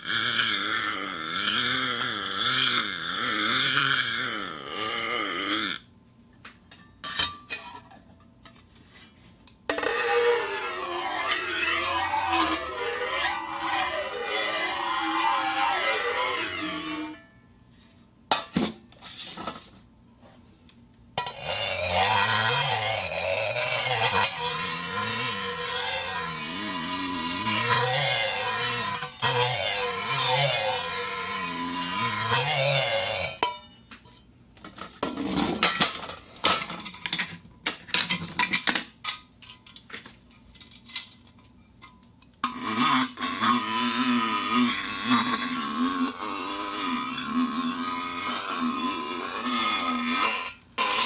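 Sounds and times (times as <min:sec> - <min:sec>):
metallic clanks and scrapes: 0:06.7 - 0:17.3, 0:21.2 - 0:43.4
wavering pitched sound: 0:09.7 - 0:17.4, 0:21.4 - 0:33.5.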